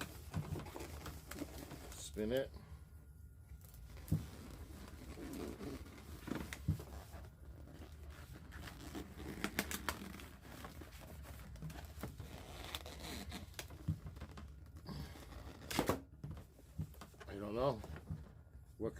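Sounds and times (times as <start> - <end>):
balloon rubbing against hands: 3.9 - 13.6.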